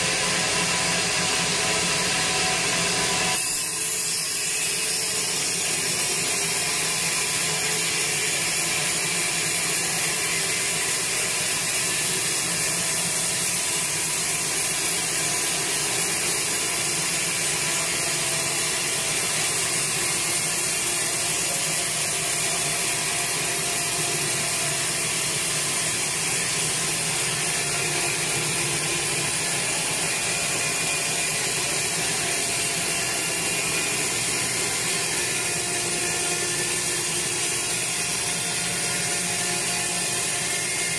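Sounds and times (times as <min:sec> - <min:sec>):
band saw cutting log: 0:00.0 - 0:40.9.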